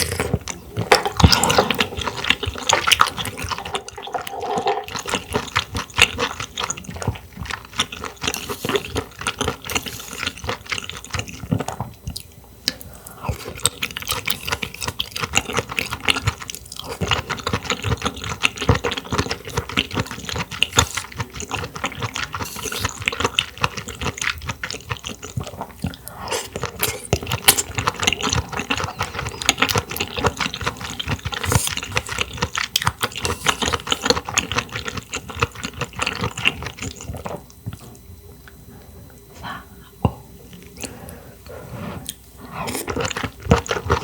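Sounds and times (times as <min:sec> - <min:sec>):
wet chewing smacks and clicks: 0:00.0 - 0:38.6, 0:40.0 - 0:44.0.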